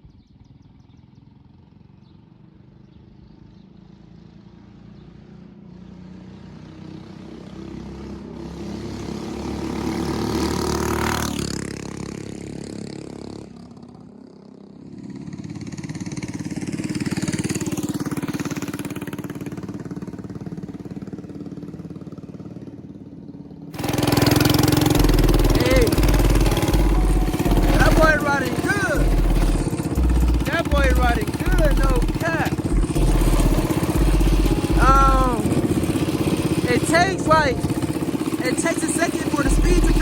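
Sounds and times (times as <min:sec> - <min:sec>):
moped engine revving: 0:08.1 - 0:13.7, 0:14.8 - 0:22.8, 0:23.8 - 0:40.0.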